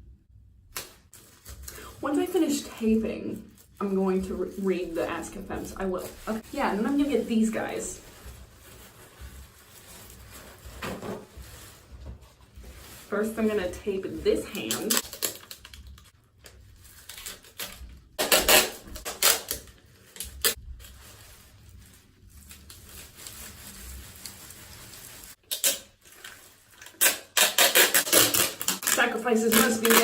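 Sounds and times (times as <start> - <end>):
packing tape ripping off roll: 0.7 - 1.8, 14.4 - 21.8, 22.4 - 30.0
tape rustling: 0.7 - 30.0.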